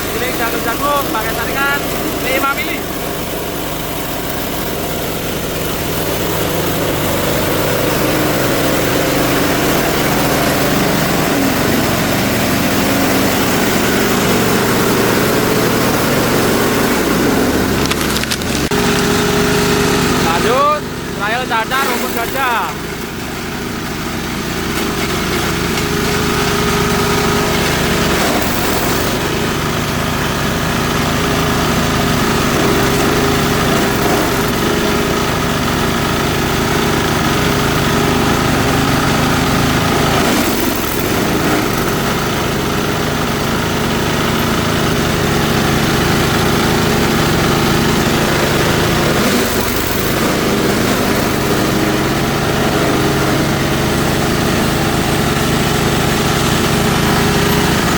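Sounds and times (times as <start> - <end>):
chopper machine shredding grass: 0.0 - 57.9.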